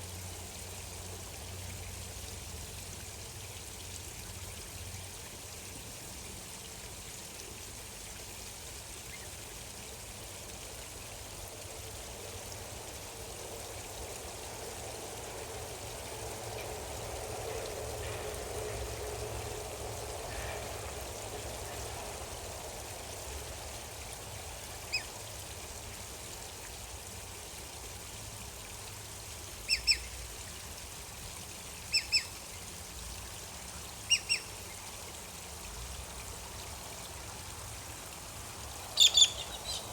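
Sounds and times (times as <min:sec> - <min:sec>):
water trickling: 0:00.0 - 0:39.9
bird calling: 0:29.7 - 0:30.0, 0:39.0 - 0:39.9.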